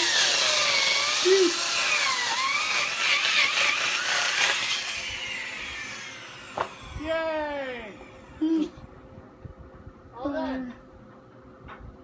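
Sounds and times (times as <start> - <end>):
power tool whining: 0.0 - 8.8.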